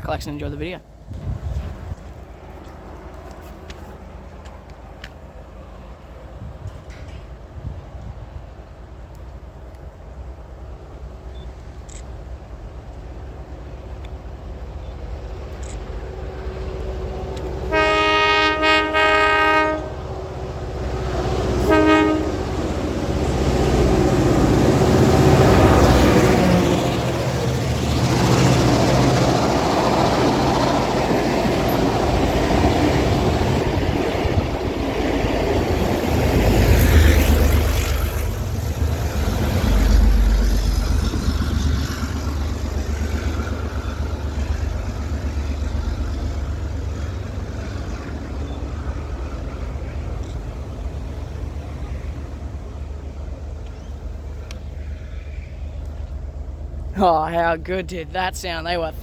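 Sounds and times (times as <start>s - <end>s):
diesel locomotive engine rumbling: 0.0s - 59.0s
locomotive horn blasts: 17.7s - 20.0s, 21.6s - 22.6s.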